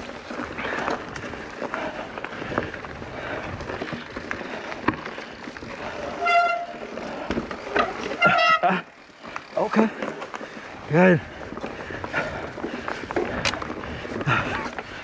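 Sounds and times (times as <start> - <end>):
bike tyres on dirt trail: 0.0 - 15.0
short high-pitched honk: 6.2 - 6.8, 8.2 - 8.7.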